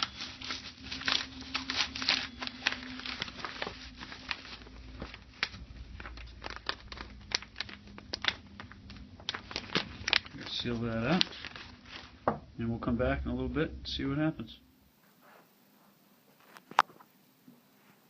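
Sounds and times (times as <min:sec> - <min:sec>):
plastic packaging crinkling: 0:00.0 - 0:12.4
faint steady hum: 0:00.0 - 0:18.0.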